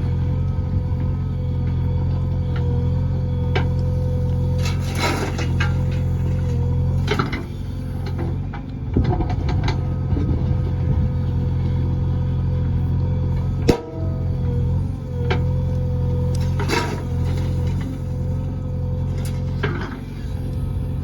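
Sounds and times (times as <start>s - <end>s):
constant whine: 0.0s - 21.0s
heavy machinery diesel engine: 0.0s - 21.0s
sharp clunks: 13.7s - 14.6s.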